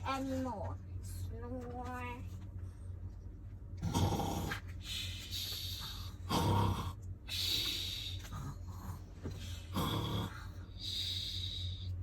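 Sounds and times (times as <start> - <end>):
person imitating snoring: 6.3 - 7.0, 9.7 - 10.5.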